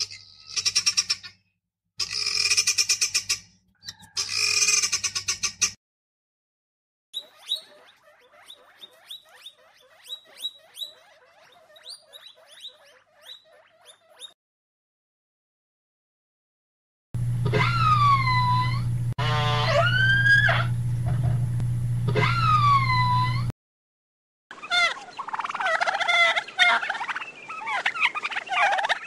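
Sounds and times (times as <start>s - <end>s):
loud pitched animal calls: 2.0s - 5.7s, 7.2s - 14.4s, 17.4s - 20.8s, 22.1s - 23.5s, 24.5s - 29.0s
quick animal chirps: 7.2s - 14.4s.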